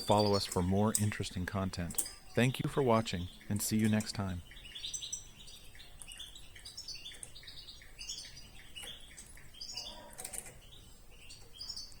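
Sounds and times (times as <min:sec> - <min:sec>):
small birds chirping: 0:00.0 - 0:12.0.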